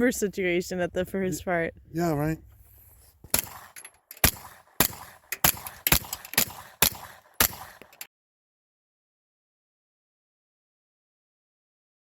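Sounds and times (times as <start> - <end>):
gunshots with ringing tail: 3.3 - 8.1.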